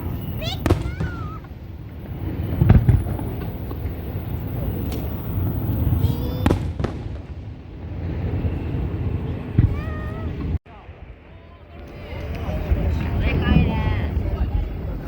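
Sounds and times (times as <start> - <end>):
firework shells bursting: 0.0 - 8.6
deep firework boom: 0.0 - 10.6
sharp firework crack: 0.0 - 10.6.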